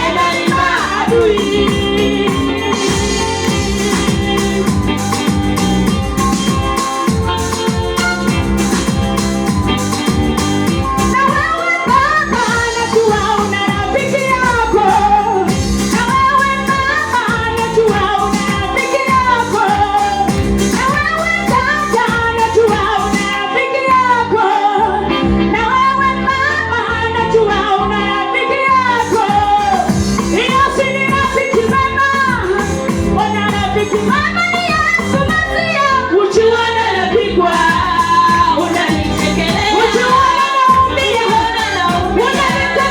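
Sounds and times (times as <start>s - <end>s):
instrumental backing with beat: 0.0s - 25.6s, 28.8s - 42.9s
children's choir singing: 37.7s - 42.9s.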